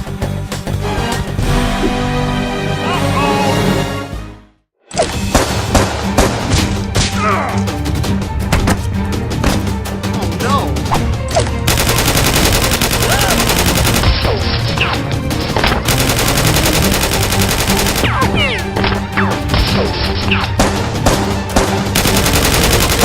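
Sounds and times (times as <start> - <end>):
action background music: 0.0 - 23.0
automatic gunfire: 11.7 - 14.2, 15.9 - 18.2, 20.6 - 23.0.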